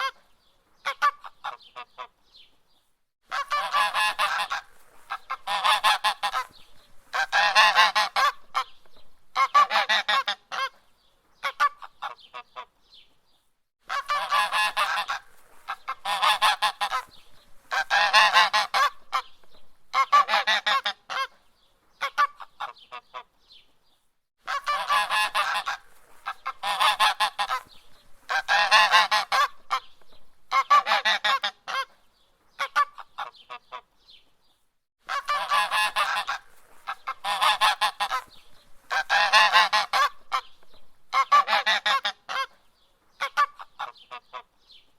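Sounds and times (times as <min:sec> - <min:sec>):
goose honking: 0:03.3 - 0:08.7, 0:09.3 - 0:10.7, 0:13.9 - 0:19.3, 0:19.9 - 0:21.3, 0:24.4 - 0:29.9, 0:30.5 - 0:31.9, 0:35.1 - 0:40.5, 0:41.1 - 0:42.5.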